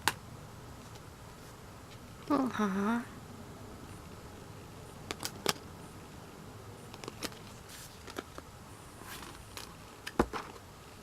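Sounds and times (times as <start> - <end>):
soft paper rustles: 7.0 - 8.4.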